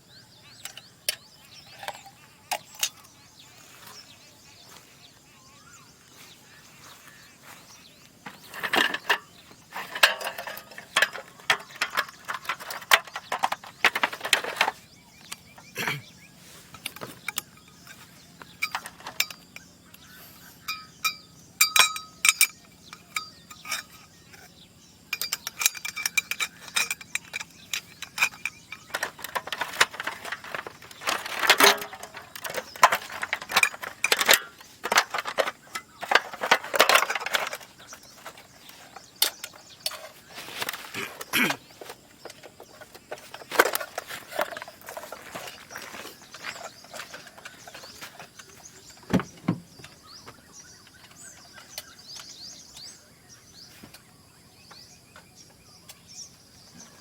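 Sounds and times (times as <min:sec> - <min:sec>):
small hard objects clinking: 0:08.2 - 0:19.7, 0:25.1 - 0:49.3.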